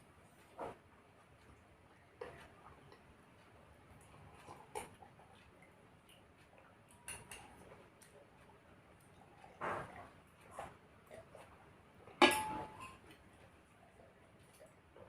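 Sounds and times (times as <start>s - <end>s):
cutlery clinking on a plate: 12.2s - 13.0s.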